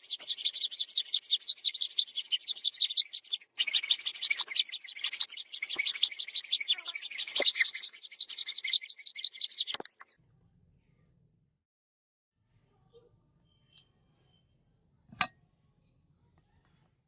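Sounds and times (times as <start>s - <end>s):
rasping strokes of hand abrading: 0.0s - 10.1s.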